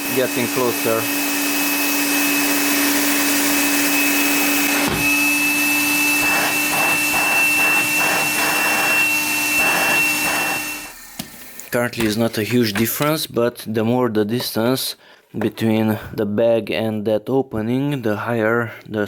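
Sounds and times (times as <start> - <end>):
vacuum cleaner motor whining: 0.0 - 12.9.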